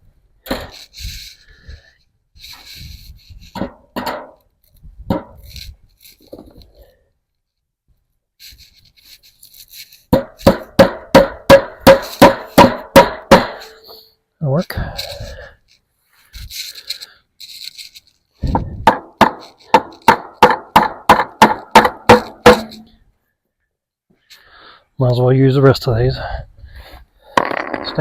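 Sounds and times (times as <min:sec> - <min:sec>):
hammer striking fence staple: 0:03.6 - 0:04.4, 0:10.1 - 0:13.8, 0:18.5 - 0:22.9.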